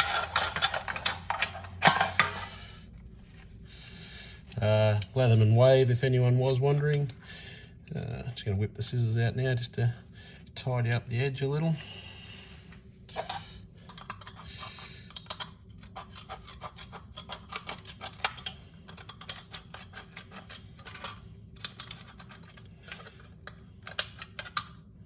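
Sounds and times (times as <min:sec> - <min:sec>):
scissors snipping metal can: 0:15.1 - 0:22.4.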